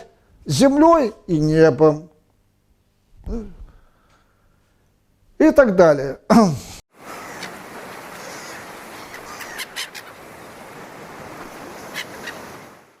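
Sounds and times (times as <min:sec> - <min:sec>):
short bird calls: 0:07.0 - 0:10.4, 0:11.6 - 0:12.8.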